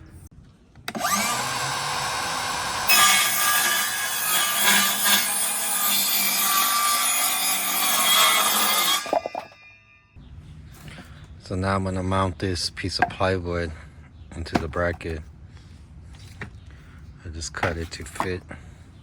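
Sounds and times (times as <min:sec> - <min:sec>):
power saw cutting plywood: 0:00.9 - 0:09.6.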